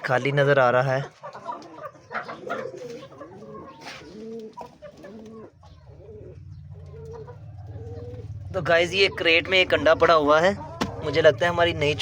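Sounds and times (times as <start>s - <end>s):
chickens clucking softly: 0.0s - 12.0s
pigeons cooing: 1.0s - 12.0s
low steady hum: 5.4s - 12.0s.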